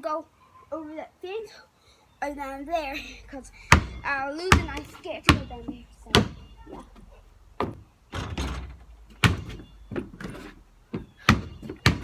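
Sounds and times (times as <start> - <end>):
basketball bouncing on hard ground: 3.7 - 7.0, 7.6 - 12.0.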